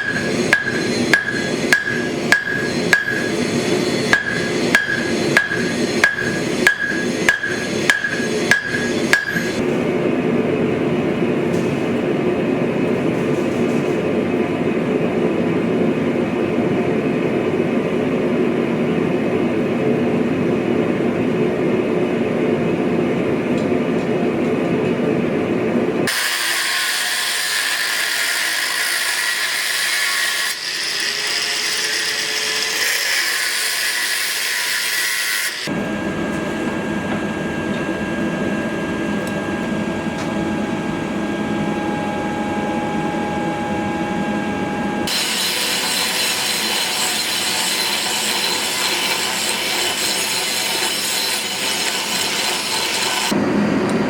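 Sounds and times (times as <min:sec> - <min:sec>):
hammer striking hot steel: 0:00.0 - 0:09.6.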